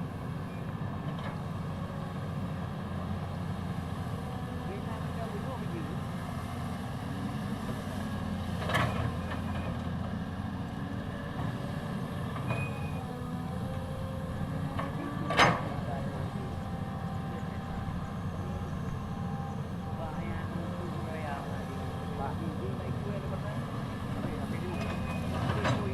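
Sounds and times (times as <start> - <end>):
excavator diesel engine running: 0.0 - 25.9.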